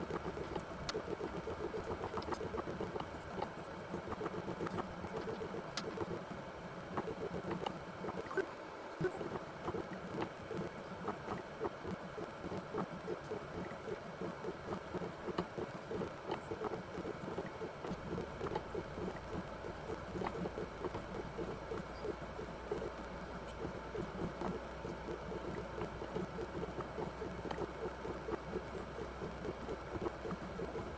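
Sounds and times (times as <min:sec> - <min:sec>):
low steady hum: 0:00.0 - 0:30.9
small clicks and knocks: 0:00.1 - 0:06.1.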